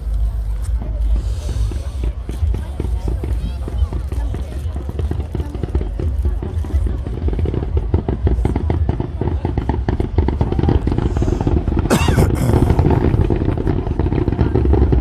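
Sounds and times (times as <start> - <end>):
fireworks crackling: 0.0 - 15.0
sharp firework burst: 8.4 - 15.0.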